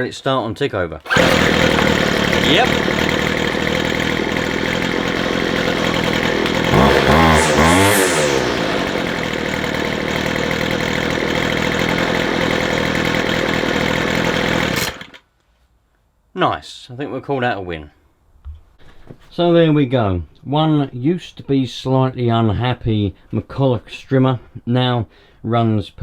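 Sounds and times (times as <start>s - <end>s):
strimmer engine idling: 1.0s - 15.2s.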